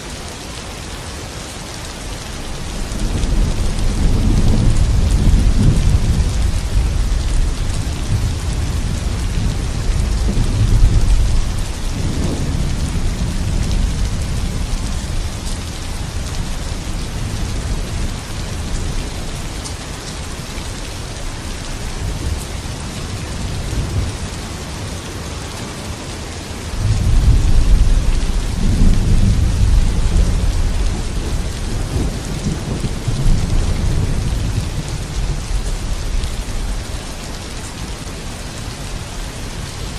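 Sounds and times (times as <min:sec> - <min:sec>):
heavy rain hissing: 0:00.0 - 0:39.9
rolling thunder: 0:02.9 - 0:19.0, 0:26.8 - 0:36.8.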